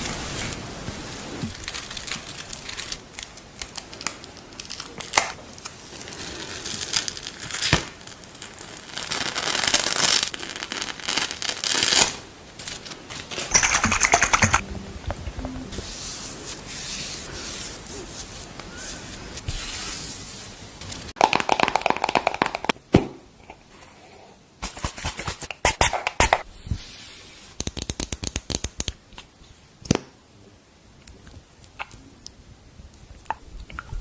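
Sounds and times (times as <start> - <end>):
scratchy brushing hiss: 13.3 - 14.6, 15.4 - 20.7
rapid tapping and clicking: 13.5 - 14.6.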